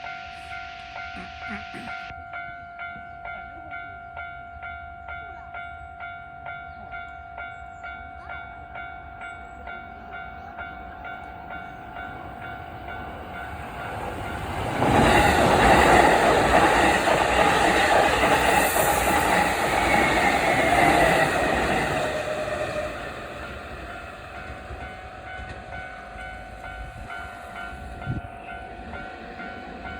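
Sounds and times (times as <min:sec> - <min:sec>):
level-crossing warning bell ringing: 0:00.0 - 0:29.9
train wheels rushing on rails: 0:11.5 - 0:29.9.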